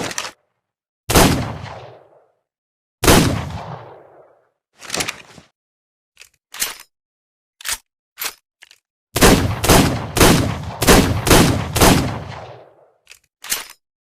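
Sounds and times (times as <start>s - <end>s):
gunshots: 1.1s - 2.2s, 3.0s - 4.3s, 9.2s - 12.9s.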